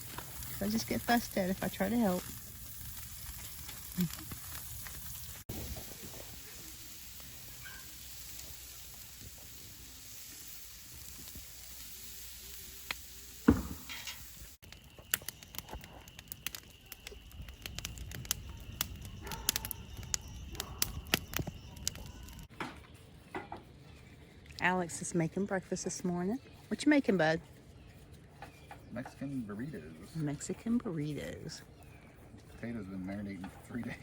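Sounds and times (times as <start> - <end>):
food sizzling and crackling: 0.0 - 22.5.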